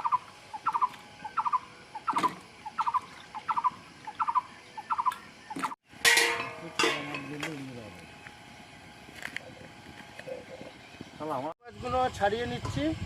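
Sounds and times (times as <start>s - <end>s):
bird calling: 0.0s - 5.8s.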